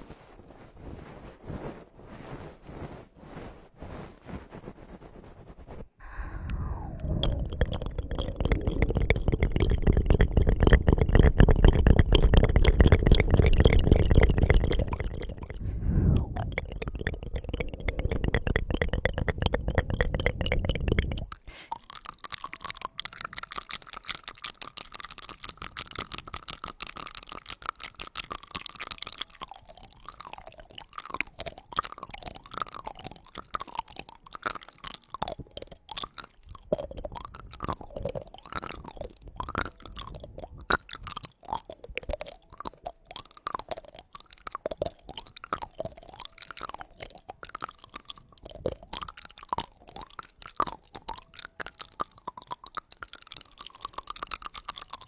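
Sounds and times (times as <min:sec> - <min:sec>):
loud low rumble: 0:06.0 - 0:08.7, 0:15.6 - 0:16.7
tongue clicks and smacks: 0:06.0 - 0:15.6, 0:16.2 - 0:55.0
squeaky mouth glides: 0:06.0 - 0:23.5, 0:28.6 - 0:55.0.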